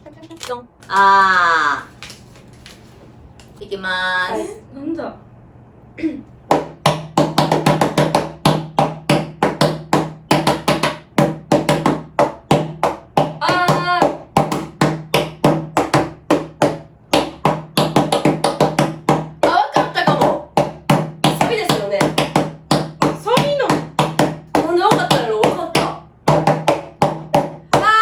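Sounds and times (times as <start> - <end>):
hands tapping and clapping rhythm: 6.4 - 28.0.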